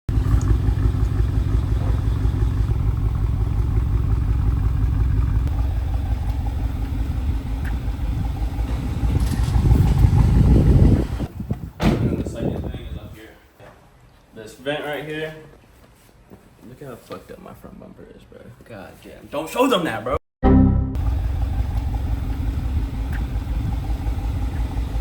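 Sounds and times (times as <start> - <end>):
car engine idling: 0.1 - 11.4, 21.0 - 25.0.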